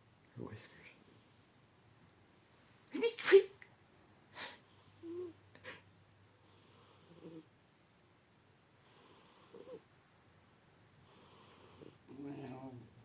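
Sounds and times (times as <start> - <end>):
cat snoring: 4.7 - 5.4, 6.4 - 7.5, 8.8 - 9.9, 11.0 - 12.2.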